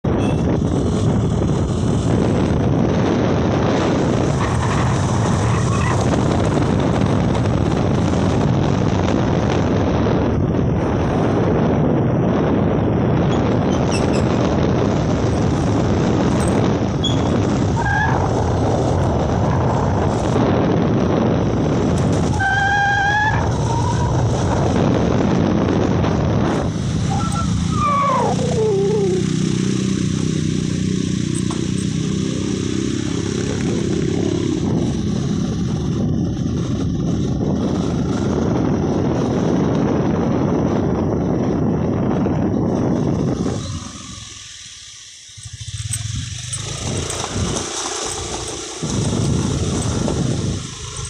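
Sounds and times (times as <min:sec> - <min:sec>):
loud rumbling road noise: 0:00.0 - 0:51.0
brief pitched calls: 0:27.0 - 0:29.4.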